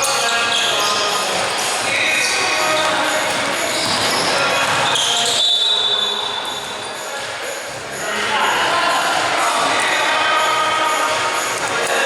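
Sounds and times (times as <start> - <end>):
voices echoing in hall: 0.0 - 12.0
basketball bouncing on gym floor: 0.7 - 6.5.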